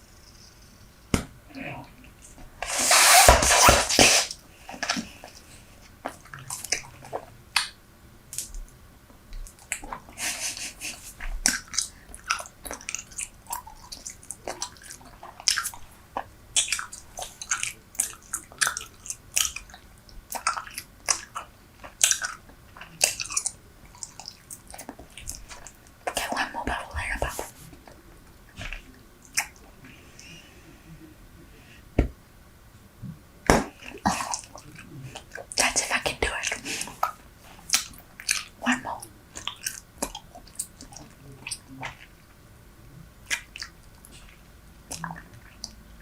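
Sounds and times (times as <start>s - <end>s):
gum chewing: 9.4s - 30.3s, 33.7s - 42.2s, 43.2s - 45.8s.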